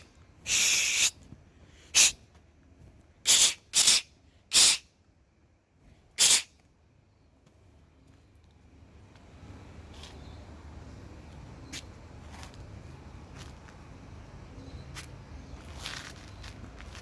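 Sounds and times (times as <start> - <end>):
water spraying in hissing bursts: 0.5 - 1.1, 3.3 - 4.8, 6.2 - 6.5.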